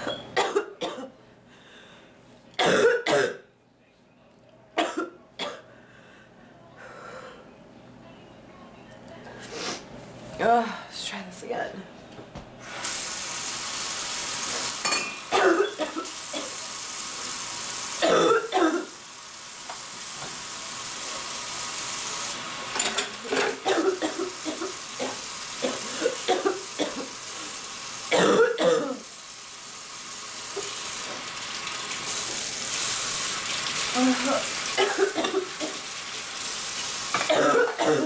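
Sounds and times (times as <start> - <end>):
woman coughing: 0.4 - 1.2, 2.6 - 3.5, 4.8 - 5.7, 15.3 - 16.6, 18.0 - 18.9, 23.6 - 27.1, 28.1 - 29.0, 34.2 - 35.8, 37.2 - 38.0.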